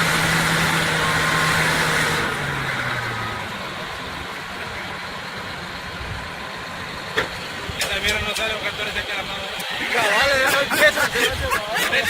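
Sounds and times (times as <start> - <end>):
heavy machinery diesel engine: 0.0 - 12.0.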